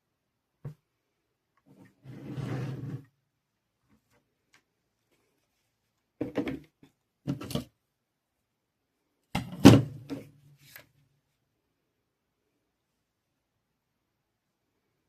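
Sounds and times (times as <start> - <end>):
objects knocking on hard surface: 6.2 - 6.6.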